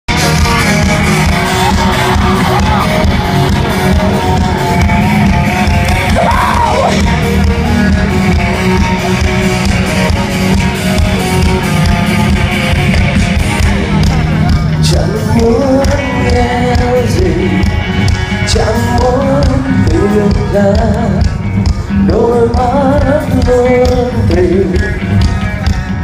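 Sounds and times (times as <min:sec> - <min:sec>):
live rock band playing: 0:00.1 - 0:26.0
people yelling: 0:01.1 - 0:05.1, 0:06.0 - 0:07.1.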